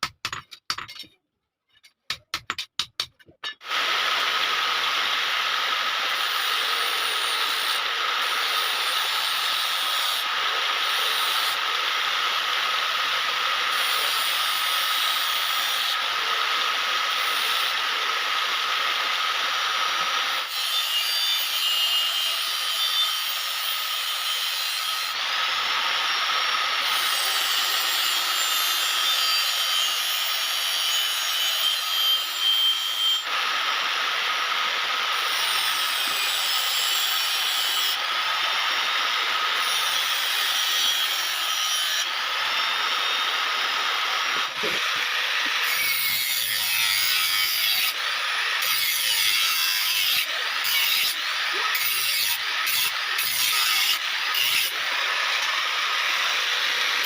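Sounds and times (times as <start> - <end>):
steel blade grinding: 6.1 - 11.6, 13.3 - 18.9, 19.9 - 33.9, 35.1 - 57.0.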